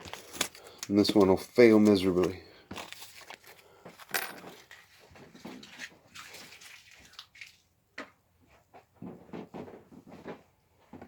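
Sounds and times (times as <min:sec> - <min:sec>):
scraping and rustling: 0:01.2 - 0:07.2.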